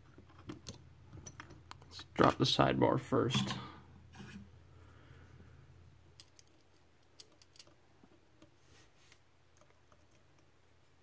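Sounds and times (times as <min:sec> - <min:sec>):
low steady hum: 0:00.0 - 0:11.0
metal scrape: 0:03.3 - 0:04.5
clicks of metal lock parts: 0:06.2 - 0:07.8.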